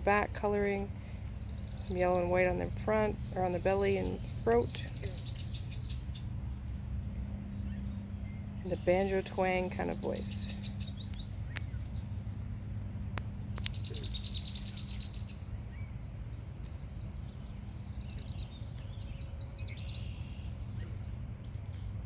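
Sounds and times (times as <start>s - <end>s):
low background rumble: 0.0s - 22.0s
songbirds trilling: 0.0s - 22.0s.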